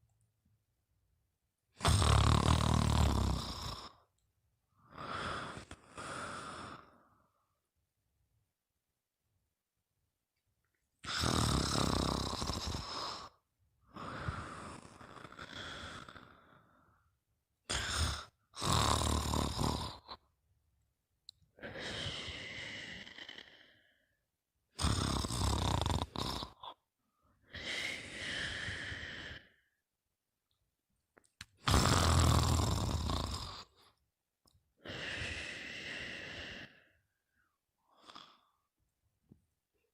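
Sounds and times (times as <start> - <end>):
loud snore: 1.8 - 4.0, 11.0 - 13.4, 14.0 - 16.8, 17.7 - 20.2, 24.8 - 26.8, 31.6 - 33.8, 37.9 - 38.6
breathy out-breath: 21.6 - 24.2, 27.2 - 29.8, 34.8 - 38.7.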